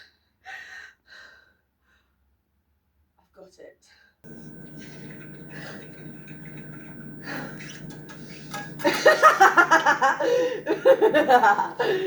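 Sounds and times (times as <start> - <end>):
low steady hum: 4.3 - 12.0.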